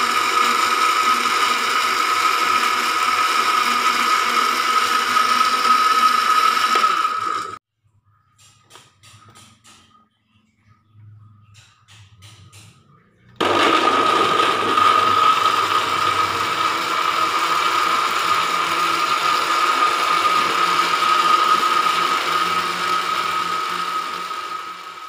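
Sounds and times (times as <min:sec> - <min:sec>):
blender motor whining: 0:00.0 - 0:07.6, 0:13.4 - 0:25.0.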